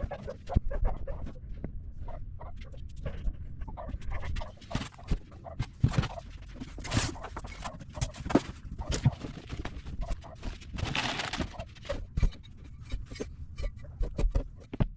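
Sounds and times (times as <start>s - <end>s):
packaging rustling: 5.9s - 12.0s.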